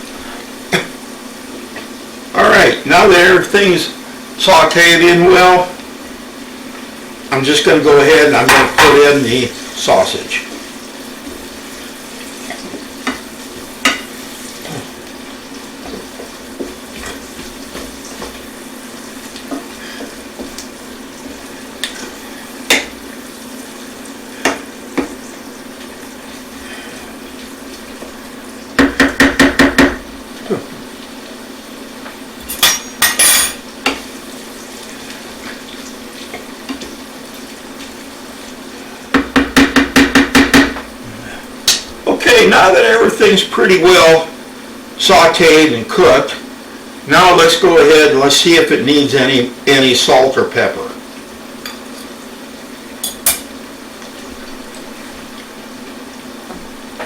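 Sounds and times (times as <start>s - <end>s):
sausage and vegetables frying: 0.0s - 57.0s
utensil stirring in a pan: 3.0s - 41.7s
rapid knocks against a pan: 28.8s - 30.1s, 39.1s - 40.9s.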